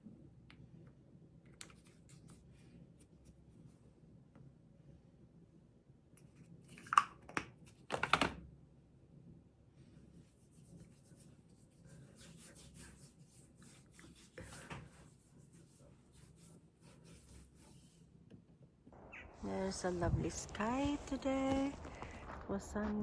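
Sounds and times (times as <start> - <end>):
scratchy rustling and rubbing: 10.1 - 18.2.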